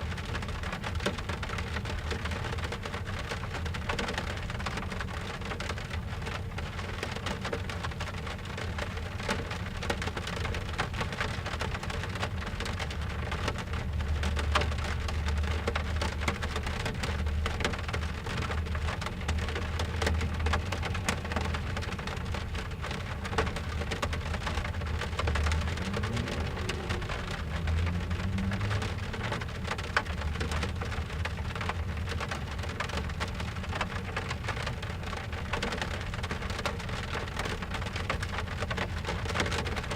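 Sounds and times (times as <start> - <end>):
rain drumming on car roof: 0.0 - 39.9
low rumble: 25.0 - 29.7.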